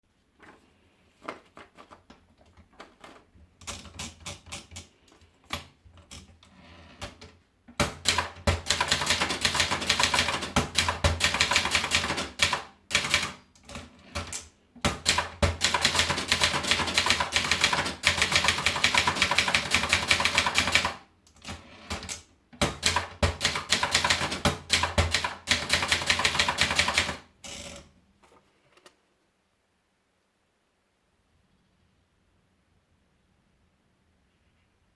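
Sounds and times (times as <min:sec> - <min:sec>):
typewriter typing: 0:01.3 - 0:06.3, 0:06.9 - 0:27.8.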